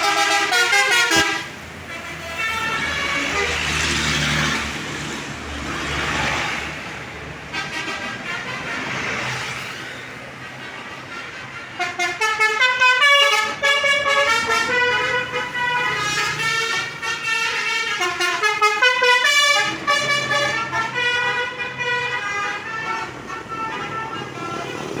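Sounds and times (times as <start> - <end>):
multi-tone bus horn melody: 0.0 - 4.8, 5.7 - 25.0
bus engine: 0.0 - 25.0.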